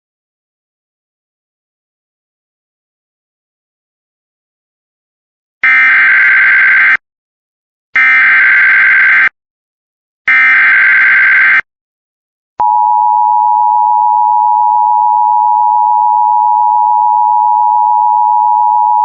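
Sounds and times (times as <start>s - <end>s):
two-tone alert signal: 12.6s - 19.0s.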